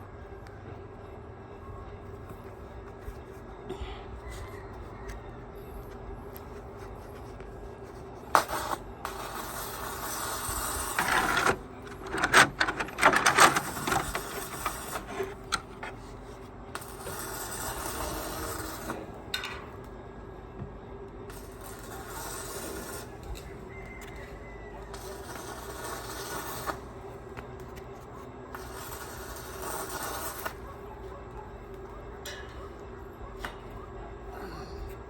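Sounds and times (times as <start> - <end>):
rasping crackling metal noise: 8.3 - 18.9.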